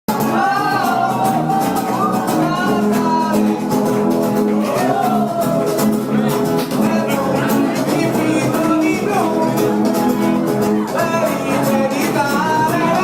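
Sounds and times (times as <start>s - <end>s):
steady beat: 0.1s - 12.4s
guitar: 0.1s - 13.0s
person singing: 0.1s - 13.0s.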